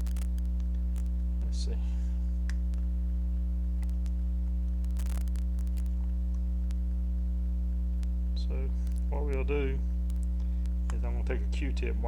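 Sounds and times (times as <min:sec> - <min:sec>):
faint clicks: 0:00.0 - 0:01.4, 0:03.8 - 0:04.2, 0:10.0 - 0:11.0
electrical mains hum: 0:00.0 - 0:12.0.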